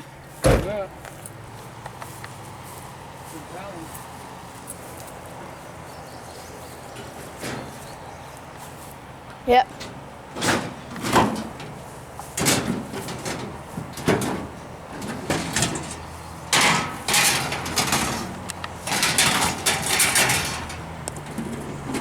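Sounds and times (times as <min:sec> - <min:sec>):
junk knocking and clattering: 0:06.9 - 0:08.0, 0:09.6 - 0:22.0
scraping and rattling: 0:06.9 - 0:08.0, 0:09.5 - 0:22.0.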